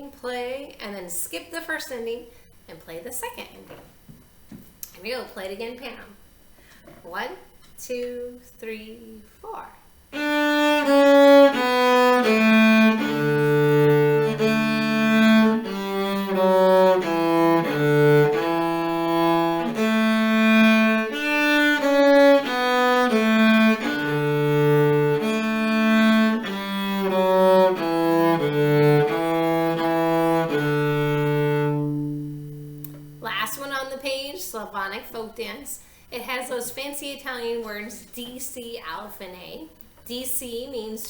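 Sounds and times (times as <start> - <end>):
cello melody: 10.1 - 33.5
lower accompanying notes: 10.2 - 33.8.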